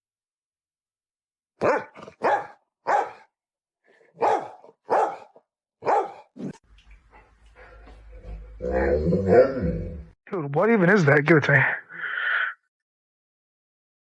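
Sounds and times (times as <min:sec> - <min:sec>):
dog barking: 0:01.6 - 0:03.3, 0:04.1 - 0:06.5.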